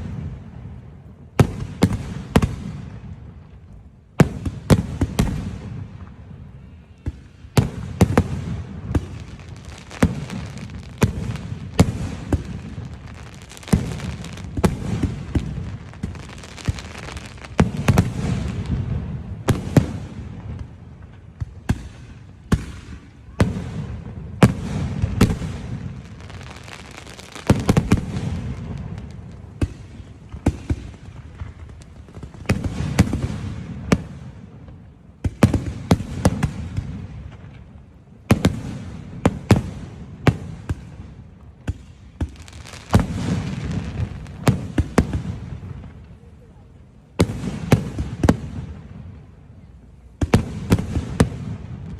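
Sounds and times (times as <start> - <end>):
fireworks bangs and booms: 0.0 - 51.9
shells bursting rumble and crackle: 7.1 - 34.3.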